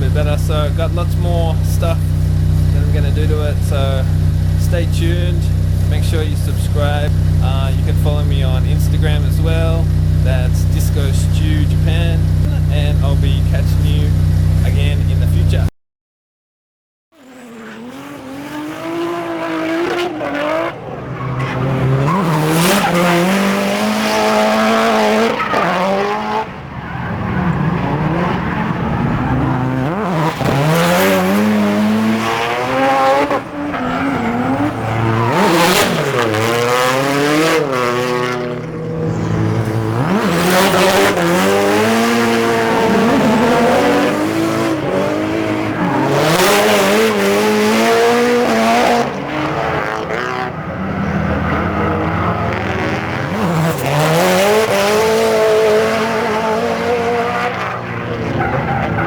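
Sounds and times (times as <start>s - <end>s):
car engine revving: 0.0s - 15.7s, 17.2s - 59.0s
tyres squealing: 19.2s - 38.0s, 38.6s - 47.6s.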